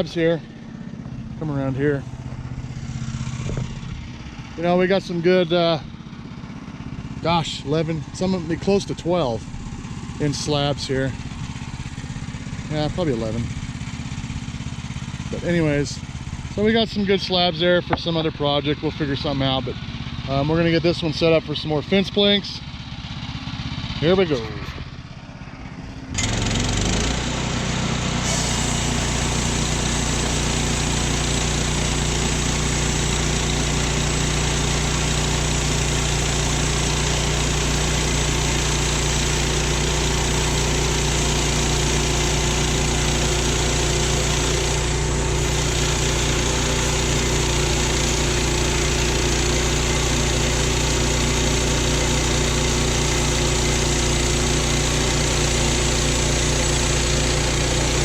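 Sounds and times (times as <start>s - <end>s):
band saw blade cutting log: 0.0s - 22.4s, 23.8s - 24.9s, 25.8s - 58.0s
sawmill gas engine running: 0.0s - 58.0s.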